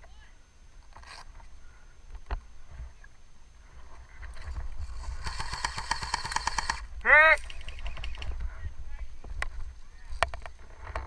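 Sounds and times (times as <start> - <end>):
airsoft gun full-auto burst: 5.0 - 6.9.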